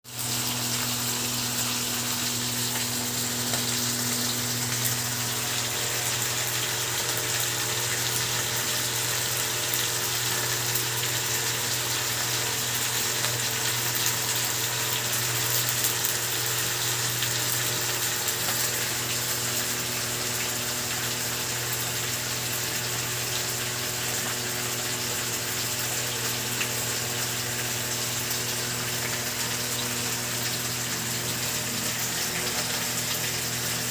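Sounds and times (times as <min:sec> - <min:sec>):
running water: 0:00.1 - 0:10.8, 0:18.5 - 0:33.9.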